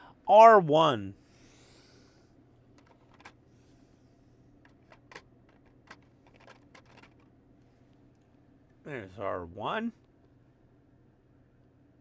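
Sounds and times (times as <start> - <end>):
light clicks of small plastic parts: 2.7 - 3.4, 4.6 - 7.3.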